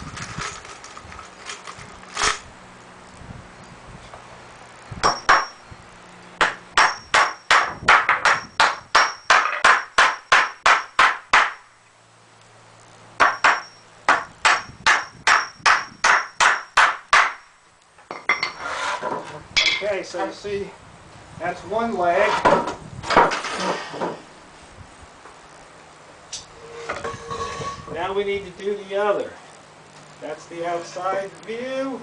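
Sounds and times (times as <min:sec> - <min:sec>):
hammer driving nails into wood: 0:05.0 - 0:05.5, 0:06.4 - 0:11.6, 0:13.2 - 0:17.4.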